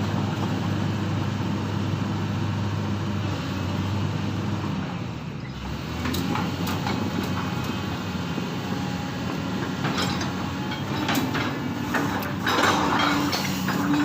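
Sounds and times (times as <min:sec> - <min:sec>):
diesel engine running: 0:00.0 - 0:14.0
metallic knocks and clanks: 0:09.6 - 0:14.0.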